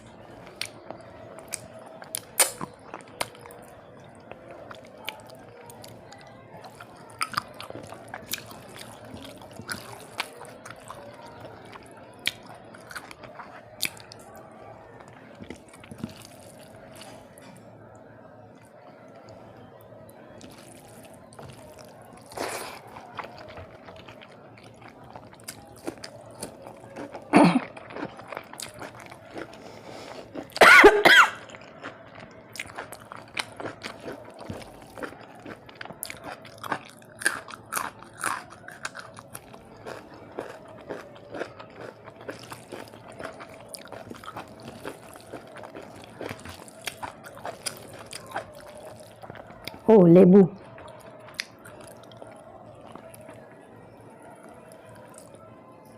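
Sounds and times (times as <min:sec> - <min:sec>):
chewing crispy food: 0:00.0 - 0:49.9, 0:50.6 - 0:55.9
wet mouth clicks: 0:02.2 - 0:02.7
short throat sounds: 0:27.3 - 0:27.7.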